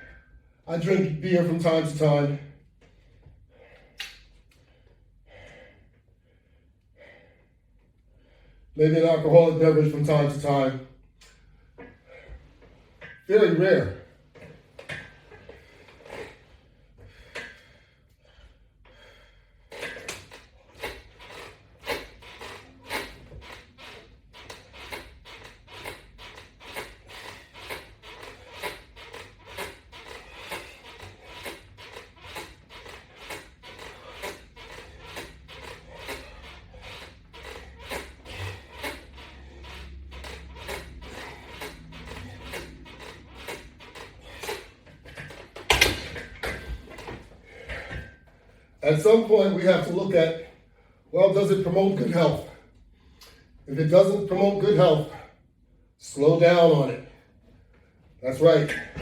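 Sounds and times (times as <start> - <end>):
rhythmic rubbing strokes: 20.7 - 45.6.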